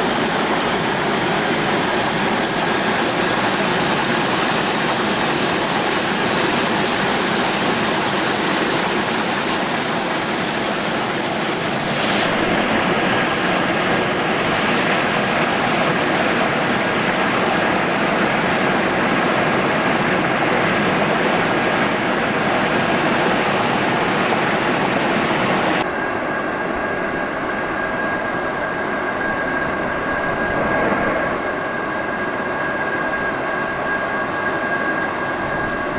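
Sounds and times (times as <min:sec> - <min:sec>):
washing machine whooshing hum: 0:00.0 - 0:35.9.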